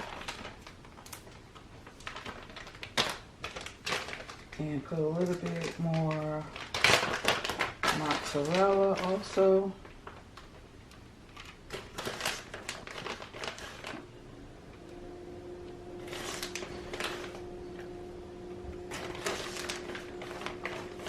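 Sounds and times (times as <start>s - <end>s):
clicking and rustling of food: 0.0s - 14.0s
steady hum: 13.9s - 21.0s.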